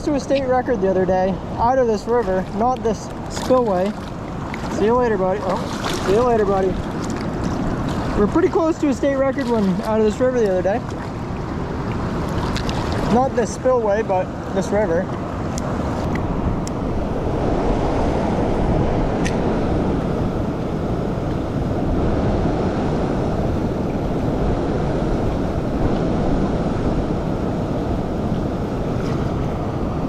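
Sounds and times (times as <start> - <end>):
water rushing over a spillway: 0.0 - 15.1.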